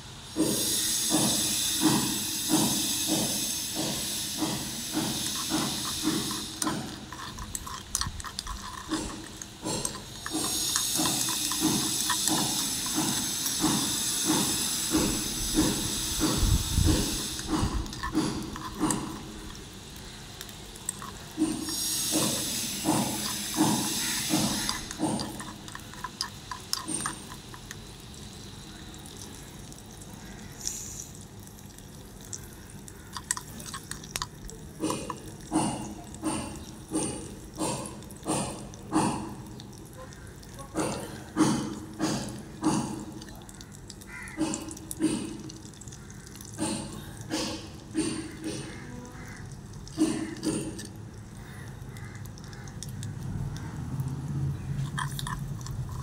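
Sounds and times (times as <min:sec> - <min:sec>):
oil sizzling in a pan: 0:00.3 - 0:40.8, 0:41.4 - 0:50.4
spoon stirring and scraping pan: 0:04.8 - 0:14.6, 0:17.1 - 0:19.8, 0:20.5 - 0:27.8.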